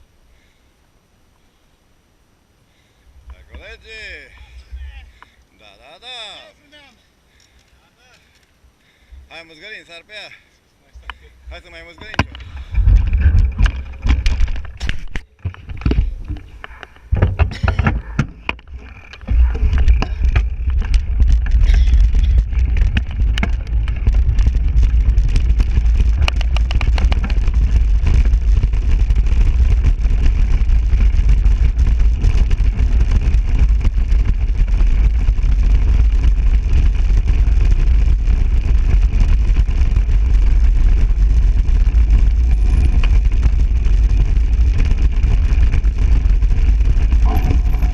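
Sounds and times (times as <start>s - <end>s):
bike clicks and rattles: 7.3s - 8.6s, 11.0s - 47.9s
wind buffeting microphone: 11.0s - 47.9s.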